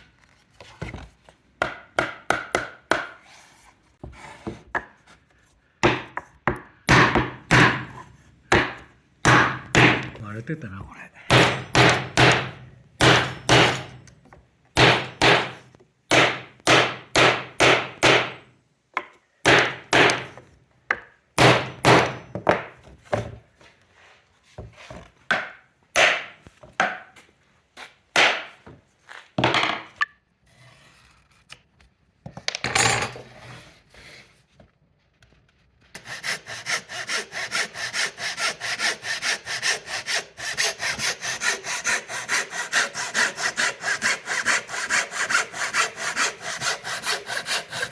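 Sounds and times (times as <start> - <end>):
hand saw cutting wood: 36.0 - 47.9.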